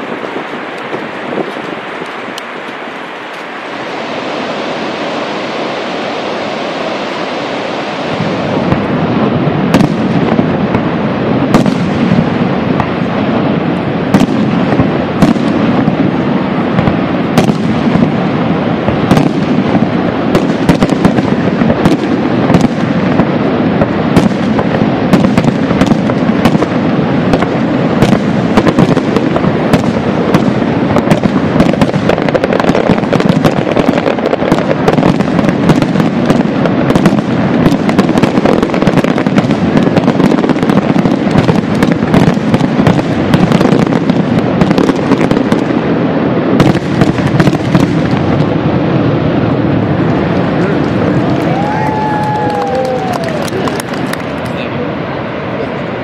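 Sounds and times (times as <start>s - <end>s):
waterfall rushing: 0.0s - 11.3s, 49.4s - 56.0s.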